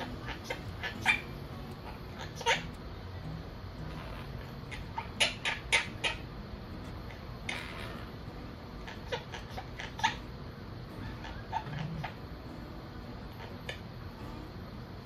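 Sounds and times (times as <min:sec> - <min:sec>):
parrots clicking and chirping: 0:00.0 - 0:06.2, 0:06.8 - 0:08.2, 0:08.8 - 0:10.2
parrot hissing: 0:00.0 - 0:12.4, 0:13.2 - 0:14.0.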